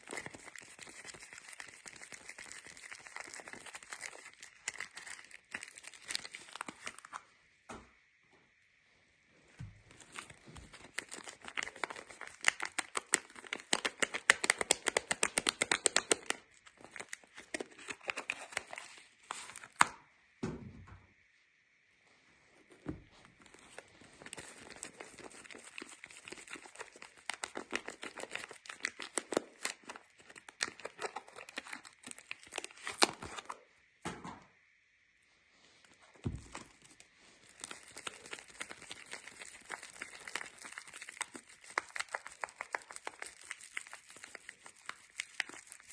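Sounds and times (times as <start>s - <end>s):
wrapper crinkling and tearing: 0.0s - 7.3s, 9.9s - 19.9s, 23.4s - 33.6s, 36.3s - 45.9s.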